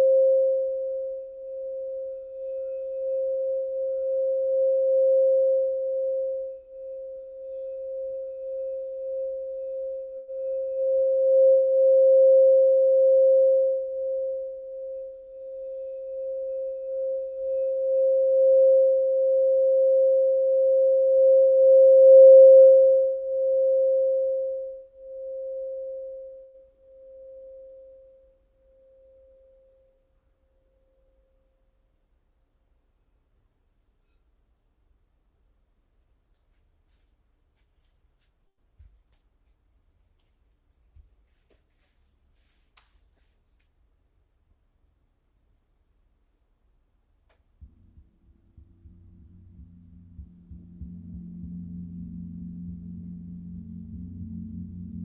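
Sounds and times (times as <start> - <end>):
singing bowl tone: 0.0 - 31.4, 47.6 - 55.0.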